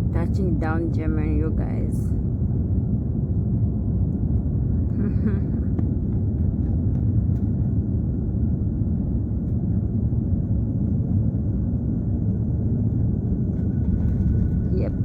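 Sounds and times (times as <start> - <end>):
airliner cabin low rumble: 0.0 - 15.0.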